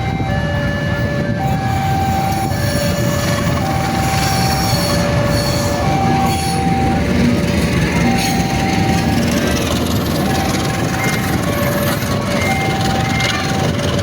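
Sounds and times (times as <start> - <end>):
train rumbling past: 0.0 - 14.0
two-tone crossing alarm: 0.0 - 14.0
train wheels squealing: 3.9 - 13.9.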